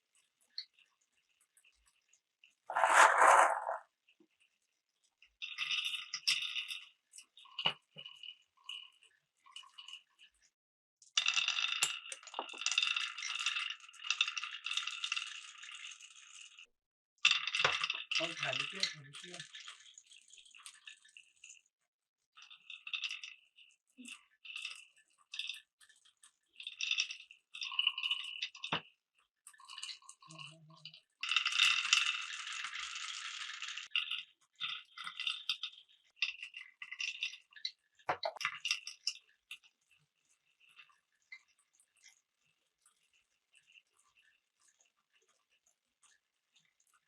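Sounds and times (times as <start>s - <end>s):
marbles rattling through wooden blocks: 2.7s - 3.8s, 11.2s - 15.4s, 31.2s - 37.4s.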